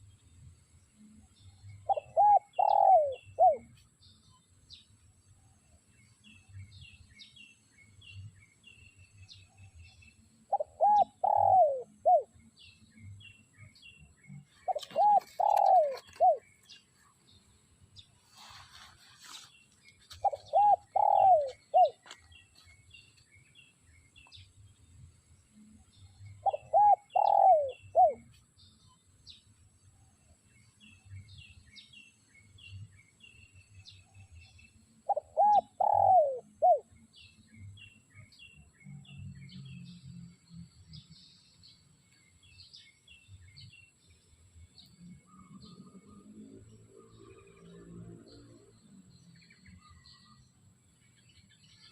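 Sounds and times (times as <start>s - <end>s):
small birds chirping: 0.0s - 51.9s
dove cooing: 1.8s - 3.7s, 10.5s - 12.4s, 14.6s - 16.5s, 20.2s - 22.2s, 26.4s - 28.3s, 35.1s - 36.9s.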